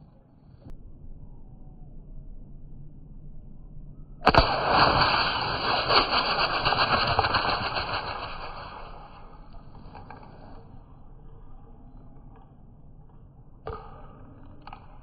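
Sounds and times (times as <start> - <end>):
spray can venting hiss: 4.3 - 9.3
air gun firing crack: 4.3 - 9.5.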